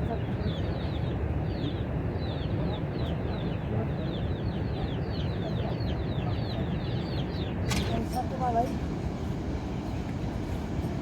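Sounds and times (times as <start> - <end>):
birds chirping: 0.0 - 8.4.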